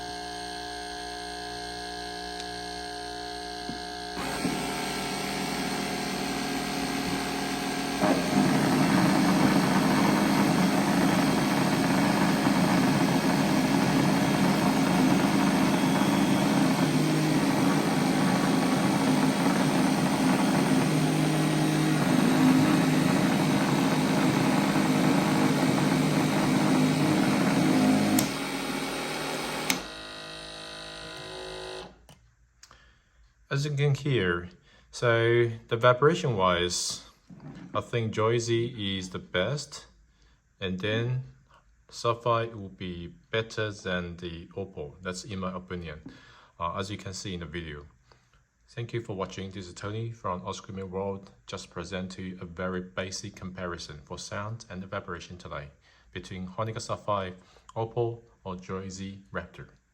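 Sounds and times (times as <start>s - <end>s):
electric clipper buzzing: 0.0s - 32.0s.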